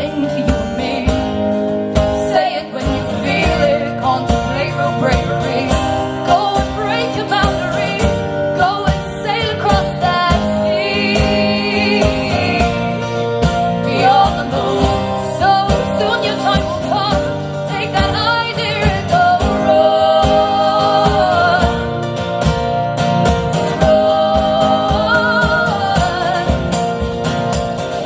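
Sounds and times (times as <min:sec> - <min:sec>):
women singing: 0:00.0 - 0:22.4, 0:23.3 - 0:27.4
strummed guitar: 0:00.0 - 0:28.0.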